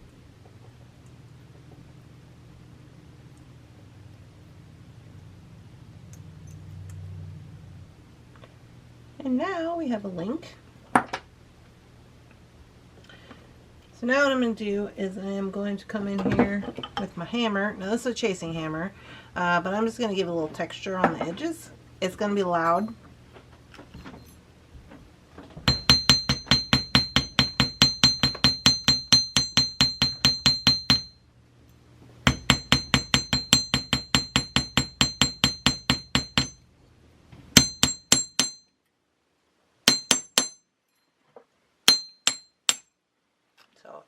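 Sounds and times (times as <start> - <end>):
hammer tapping metal wire: 25.7 - 31.2, 32.3 - 36.6, 37.6 - 38.8, 39.9 - 40.7, 41.9 - 42.9.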